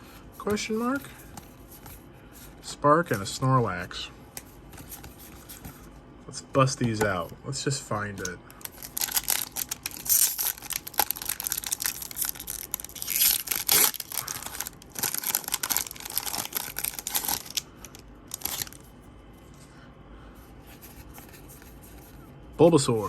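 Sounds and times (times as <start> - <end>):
foil wrapper tearing and crinkling: 8.6 - 18.8.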